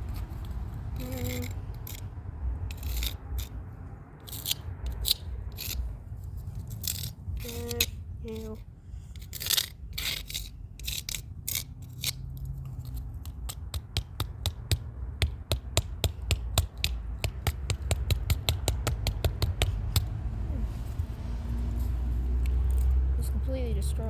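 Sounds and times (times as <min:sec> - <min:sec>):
steady low rumble: 0:00.0 - 0:24.0
hard strikes on plastic keypad: 0:13.5 - 0:20.1.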